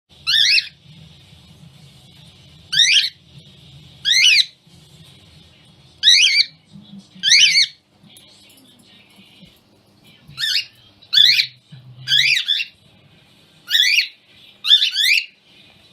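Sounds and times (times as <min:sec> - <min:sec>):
cockatiel screeching: 0:00.2 - 0:00.8, 0:02.7 - 0:03.2, 0:04.0 - 0:04.6, 0:06.0 - 0:06.5, 0:07.2 - 0:07.8, 0:10.4 - 0:12.7, 0:13.7 - 0:15.4.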